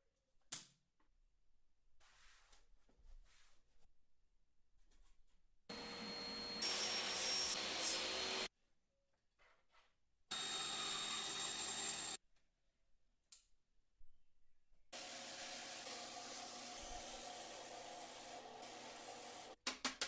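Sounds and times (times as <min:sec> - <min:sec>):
electric power tool motor whine: 0:05.7 - 0:08.5, 0:10.3 - 0:12.2.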